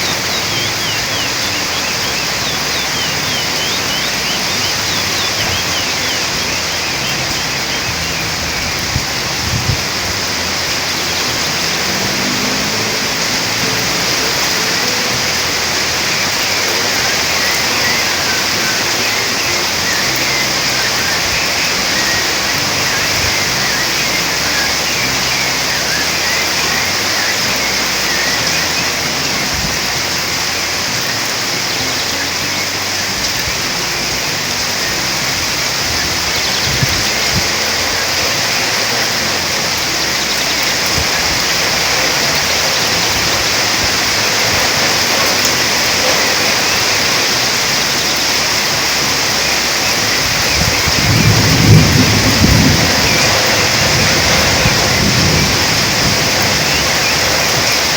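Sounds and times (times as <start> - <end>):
faint bird chirps: 0.0 - 8.7
steady rain: 0.0 - 57.9.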